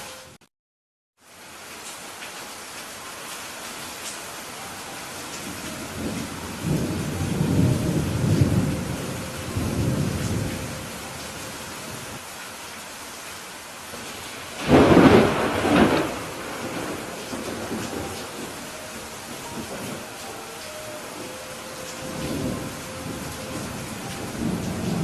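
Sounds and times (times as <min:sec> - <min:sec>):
heavy rain: 0:01.2 - 0:25.0
thunder rumbling: 0:05.4 - 0:12.2, 0:14.0 - 0:25.0
sharp thunderclap: 0:14.6 - 0:18.5.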